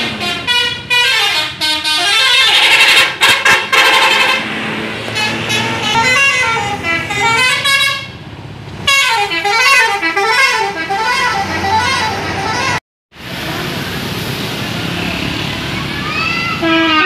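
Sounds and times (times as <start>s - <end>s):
multi-tone musical air horn: 0.0s - 4.5s, 5.1s - 8.1s, 8.9s - 12.8s, 16.6s - 17.0s.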